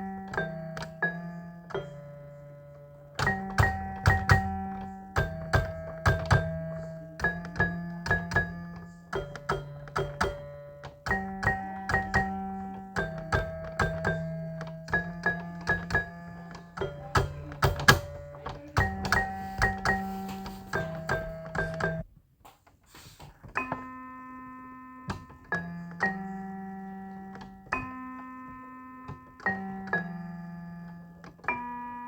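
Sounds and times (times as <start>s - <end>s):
keyboard chords over bass: 0.0s - 22.0s
clicking knocking percussion: 3.2s - 22.0s.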